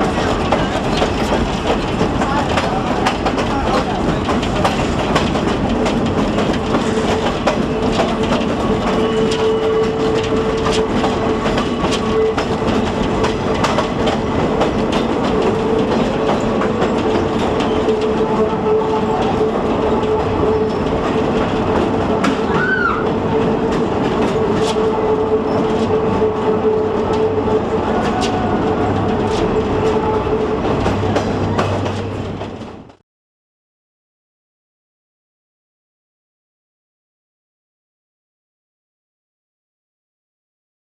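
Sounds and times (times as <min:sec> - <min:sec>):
train rumbling along track: 0:00.0 - 0:33.0
wheels clicking over rails: 0:00.0 - 0:33.0
train wheel squeal: 0:06.8 - 0:13.6, 0:15.0 - 0:21.3, 0:22.2 - 0:32.2.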